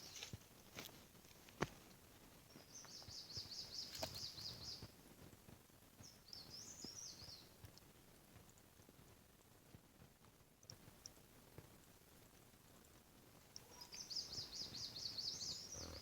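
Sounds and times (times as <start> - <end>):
songbird trilling: 2.8 - 4.8, 13.6 - 16.0.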